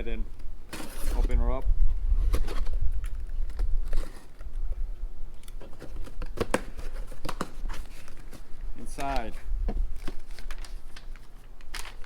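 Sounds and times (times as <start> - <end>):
cardboard box being opened: 0.7 - 1.4, 3.4 - 4.4
packing tape pulled: 10.0 - 12.0.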